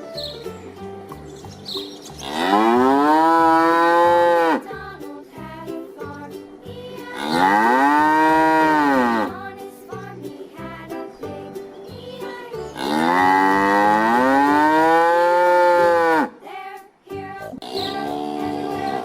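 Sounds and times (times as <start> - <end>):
cow mooing: 2.2 - 4.6, 7.2 - 9.3, 12.8 - 16.3.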